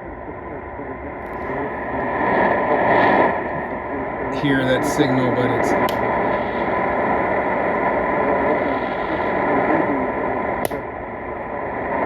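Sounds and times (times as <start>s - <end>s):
radio static hiss: 0.0s - 12.0s
weak radio station signal: 0.0s - 12.0s
click: 5.8s - 6.0s, 10.6s - 10.8s.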